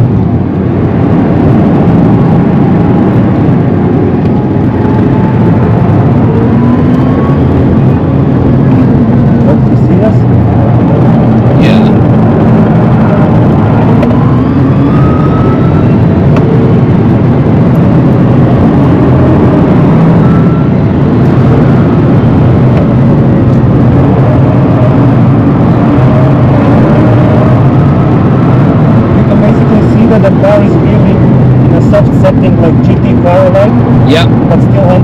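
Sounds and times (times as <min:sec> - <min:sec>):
road and wind noise in car: 0:00.0 - 0:35.0.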